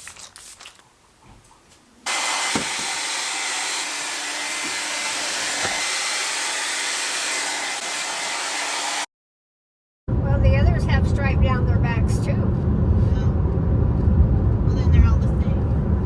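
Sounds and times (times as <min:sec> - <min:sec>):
hair dryer running: 0:02.1 - 0:09.1.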